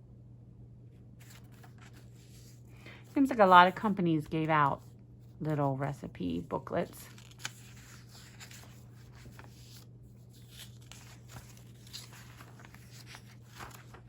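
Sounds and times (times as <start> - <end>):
steady low hum: 0.0 - 14.0
paper pages being turned: 1.2 - 5.4, 6.4 - 14.0.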